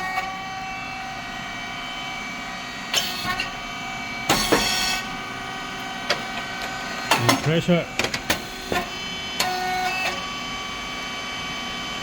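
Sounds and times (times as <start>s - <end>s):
machine hum: 0.5s - 9.5s.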